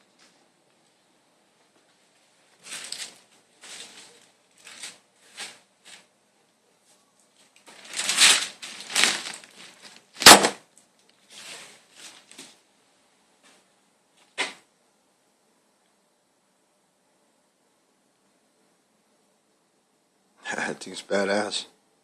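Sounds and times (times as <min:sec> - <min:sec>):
rustling and handling noises: 0:00.0 - 0:06.2, 0:06.8 - 0:12.7.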